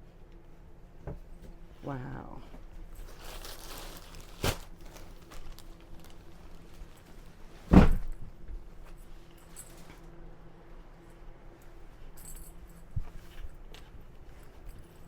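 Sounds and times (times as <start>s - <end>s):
heavy thump: 7.7s - 8.2s.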